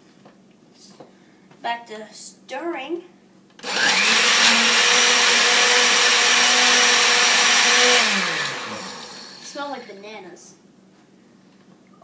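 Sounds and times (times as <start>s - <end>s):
blender motor running: 3.6s - 9.9s.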